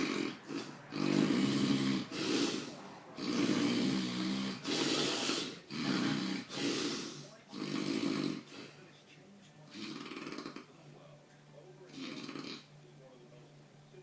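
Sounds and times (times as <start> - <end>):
person snoring: 0.0 - 8.8, 9.7 - 10.7, 11.9 - 12.7.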